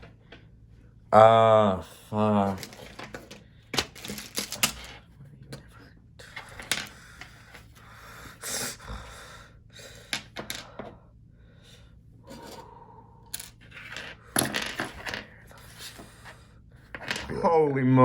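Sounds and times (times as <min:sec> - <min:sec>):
plastic toy bricks clicking and rattling: 0:02.5 - 0:04.9.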